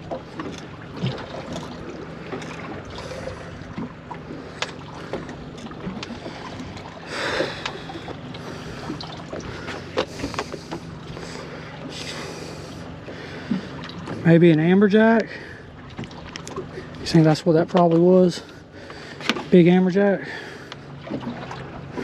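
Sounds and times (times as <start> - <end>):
wind and water wash: 0.0 - 22.0.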